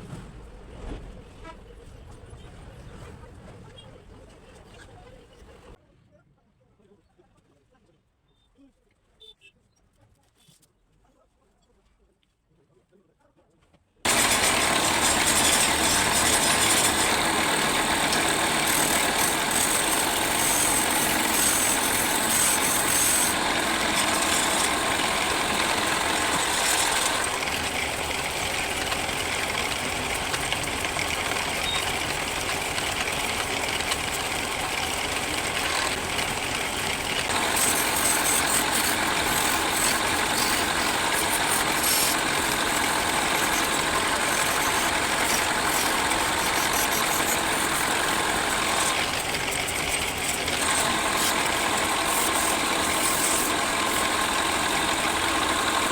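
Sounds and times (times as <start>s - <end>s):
tool cutting hiss: 14.1s - 55.9s
wood lathe motor running: 14.1s - 55.9s.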